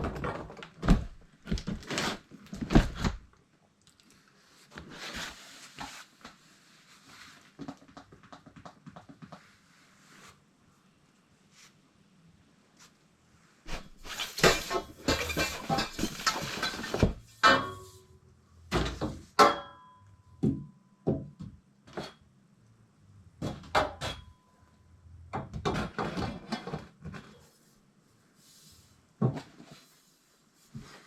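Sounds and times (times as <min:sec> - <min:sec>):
tools clattering and clinking: 0:14.0 - 0:18.0.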